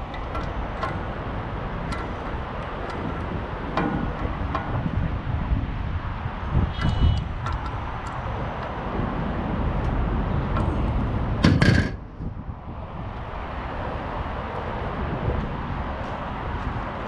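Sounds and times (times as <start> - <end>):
light clicks and knocks: 0.0 - 6.2, 6.8 - 9.0
low outdoor rumble: 0.0 - 17.0.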